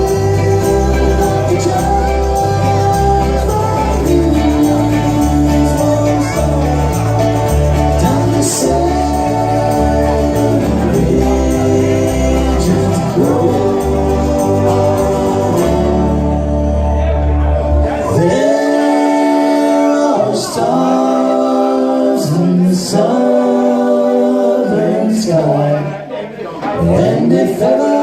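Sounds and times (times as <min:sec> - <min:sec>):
stepping bass line: 0:00.0 - 0:18.0
multi-part vocal harmony: 0:00.0 - 0:28.0.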